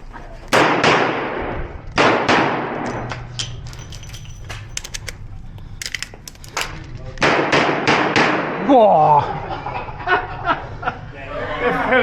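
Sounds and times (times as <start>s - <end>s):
revolver shots echoing indoors: 0.5s - 4.3s, 6.7s - 8.7s
sharp clicks and clatter: 3.4s - 7.3s.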